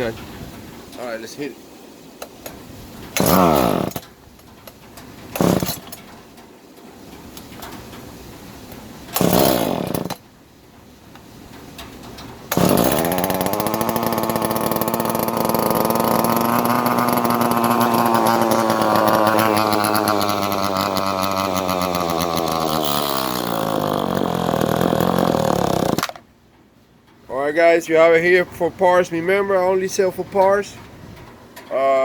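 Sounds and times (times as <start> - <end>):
chainsaw starting and idling: 3.1 - 4.1, 5.3 - 6.0, 9.1 - 10.2, 12.5 - 26.3.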